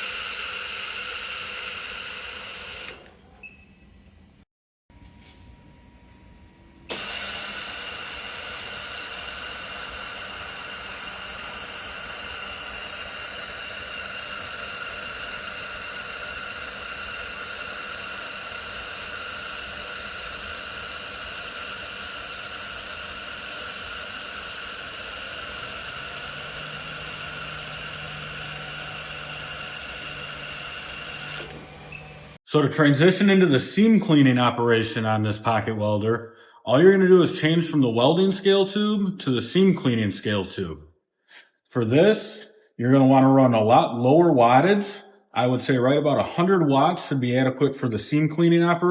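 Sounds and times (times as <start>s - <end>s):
laser welder hissing: 0.0s - 3.1s, 6.9s - 32.4s.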